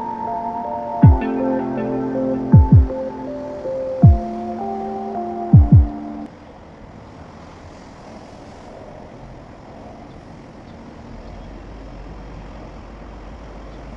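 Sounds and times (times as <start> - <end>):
background music: 0.0 - 6.3.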